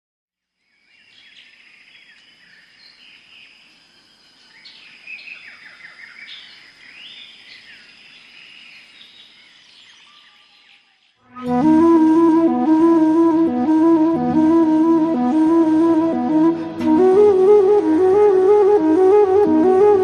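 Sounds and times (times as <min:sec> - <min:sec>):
light outdoor background noise: 0:00.4 - 0:11.3
small birds chirping: 0:00.8 - 0:11.2
steady high-pitched tone: 0:11.4 - 0:20.0.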